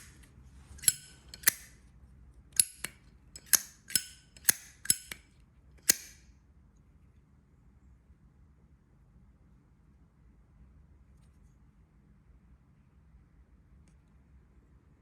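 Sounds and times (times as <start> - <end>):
lighter lid clicking: 0.8 - 1.7, 2.6 - 5.2.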